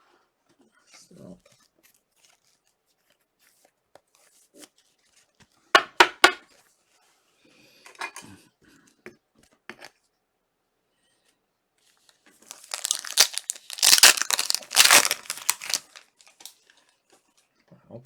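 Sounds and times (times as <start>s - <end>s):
wrapper being torn and crinkled: 12.4s - 16.5s.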